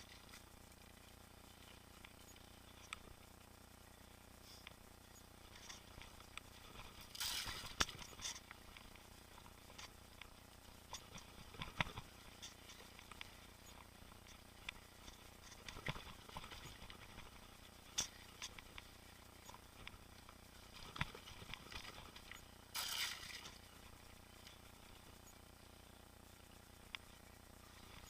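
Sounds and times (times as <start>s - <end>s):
bike clicks and knocks on trail: 5.5s - 24.6s.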